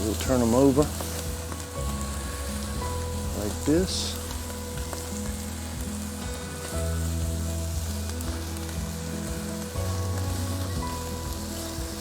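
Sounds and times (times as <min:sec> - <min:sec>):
background music: 0:00.0 - 0:12.0
chicken skewers sizzling on grill: 0:00.0 - 0:12.0.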